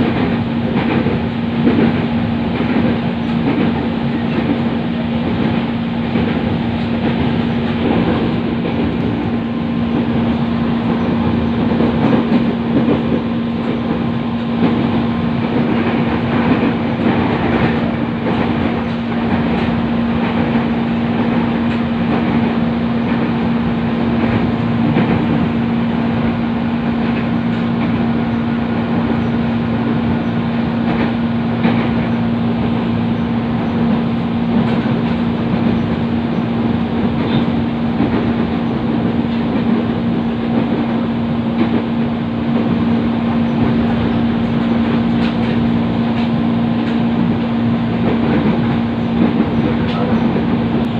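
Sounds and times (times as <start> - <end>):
train wheels rumbling on rails: 0.0 - 50.9.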